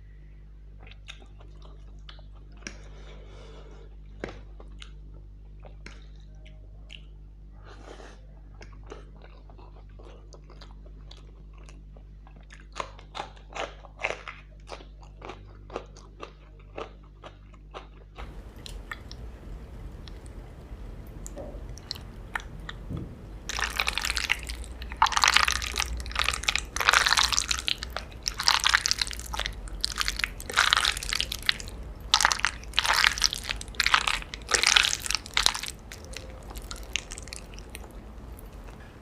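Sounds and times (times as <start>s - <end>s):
crisp food crunches: 23.4s - 38.8s.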